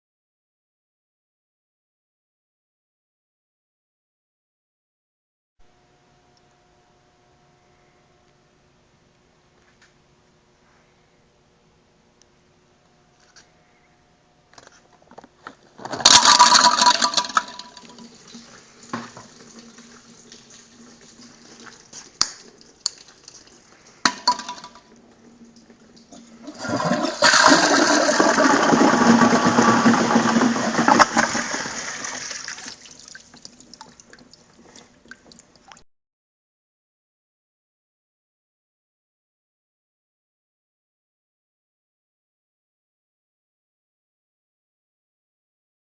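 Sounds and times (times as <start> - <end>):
faint steady hum: 5.6 - 35.8
toilet flushing water rush: 15.9 - 34.1.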